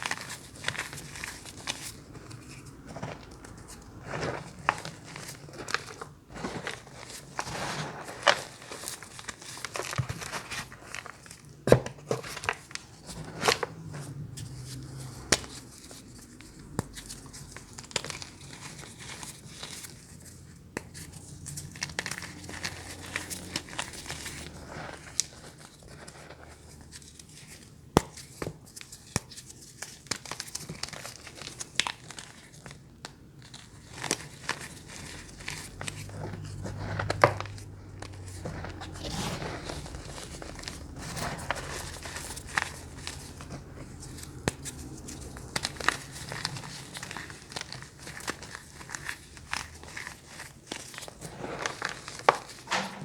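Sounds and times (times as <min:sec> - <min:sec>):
snack wrappers crinkling: 0:30.0 - 0:53.0.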